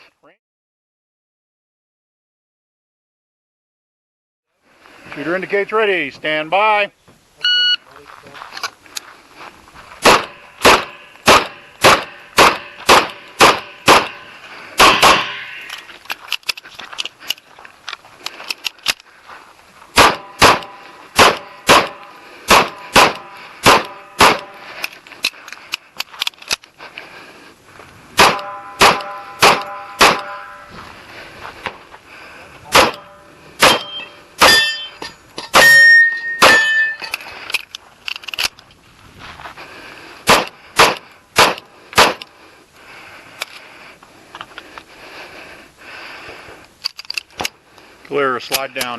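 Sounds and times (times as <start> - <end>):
handgun shots: 10.0 - 14.2, 14.8 - 15.5, 20.0 - 24.6, 28.2 - 30.6, 32.7 - 34.8, 35.5 - 37.0, 40.3 - 42.3
ringing metallic tone: 28.4 - 30.7, 33.0 - 37.2.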